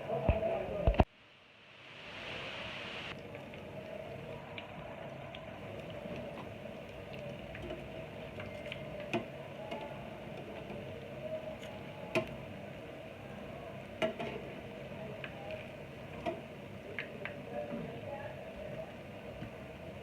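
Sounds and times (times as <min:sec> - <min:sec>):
food sizzling in oil: 0:01.7 - 0:17.2.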